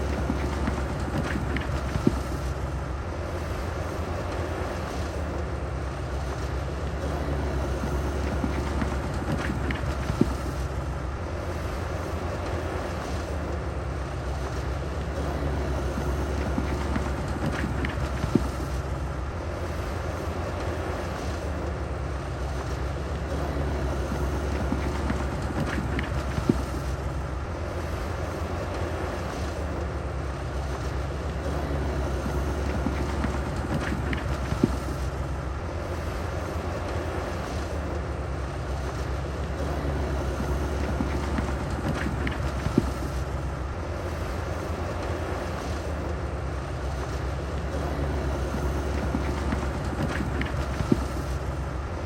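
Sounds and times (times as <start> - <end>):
diesel engine rumbling: 0.0 - 52.0.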